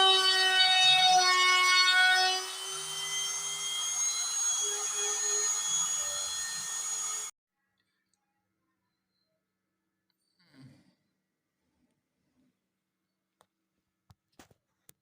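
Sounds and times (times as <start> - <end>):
carving machine motors whining: 0.0 - 7.3.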